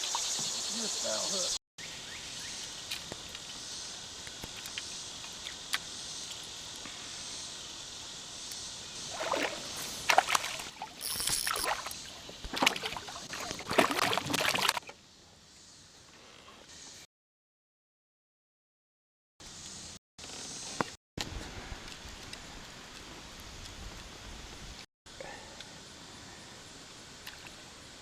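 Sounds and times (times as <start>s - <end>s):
steady outdoor hiss: 0.0s - 14.2s, 14.9s - 17.1s, 19.4s - 28.0s
water splashing and sloshing: 9.0s - 15.0s.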